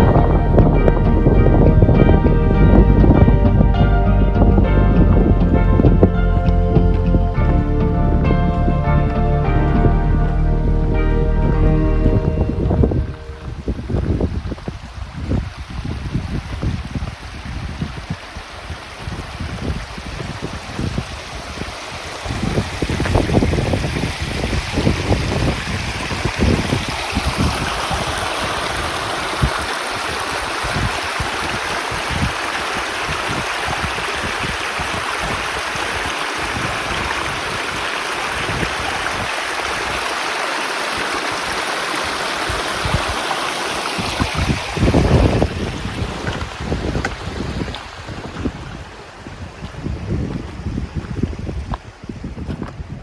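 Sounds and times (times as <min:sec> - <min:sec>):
mountain stream rushing: 0:00.0 - 0:52.7
wind buffeting microphone: 0:00.0 - 0:53.0.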